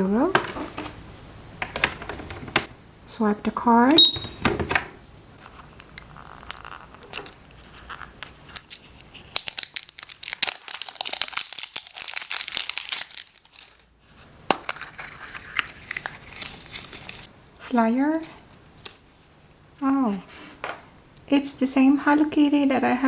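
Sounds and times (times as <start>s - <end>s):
wrapper crinkling and tearing: 5.4s - 13.9s, 14.5s - 17.3s.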